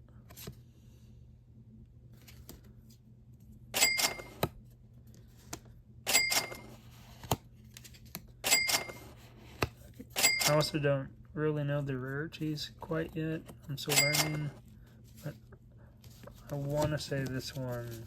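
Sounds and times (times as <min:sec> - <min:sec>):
cards swishing: 0:16.0 - 0:18.0.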